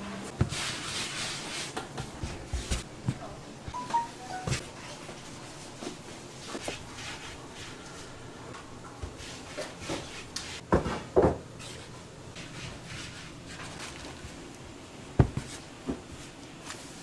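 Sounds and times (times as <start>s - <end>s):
hands rubbing dough: 0.4s - 2.9s, 4.3s - 8.1s, 9.0s - 10.6s, 11.6s - 14.5s
dough thumping on wooden table: 15.2s - 16.0s.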